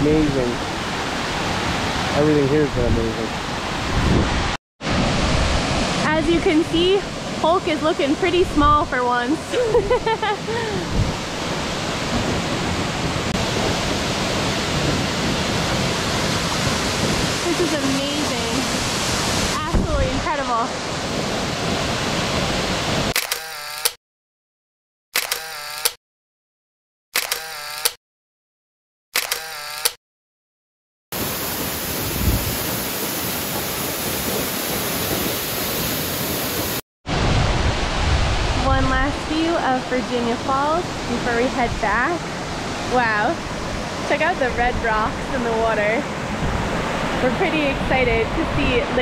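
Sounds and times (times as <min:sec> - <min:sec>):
waterfall crashing into pool: 0:10.5 - 0:23.1, 0:31.2 - 0:48.1.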